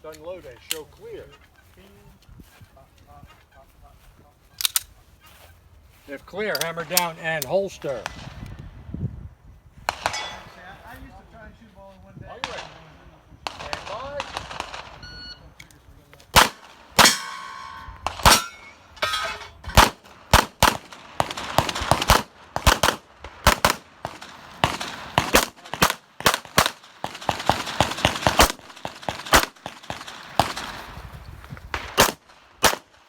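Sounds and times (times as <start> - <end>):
steel targets clanging: 10.0 - 10.7, 17.0 - 20.0
pistol shots: 16.3 - 18.7, 19.6 - 30.8, 31.7 - 33.0.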